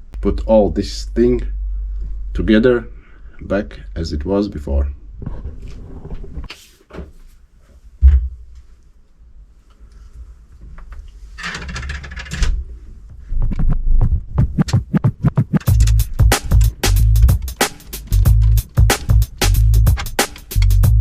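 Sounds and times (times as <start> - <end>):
metal parts clicking on a bench: 11.4 - 12.5, 15.6 - 18.6, 19.8 - 20.8
electronic music with drum beat: 13.6 - 21.0.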